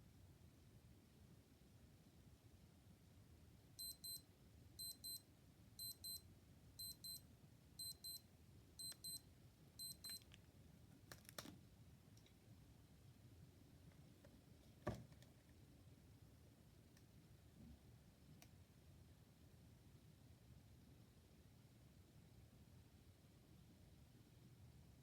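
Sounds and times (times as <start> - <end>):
digital watch alarm beeping: 3.8 - 4.2, 4.8 - 5.2, 5.8 - 6.2, 6.8 - 7.2, 7.8 - 8.2, 8.8 - 9.2, 9.8 - 10.2.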